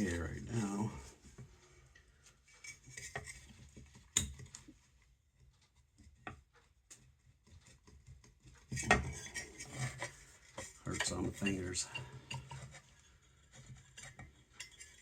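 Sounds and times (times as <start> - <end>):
metal scraping and rattling: 8.5 - 15.0.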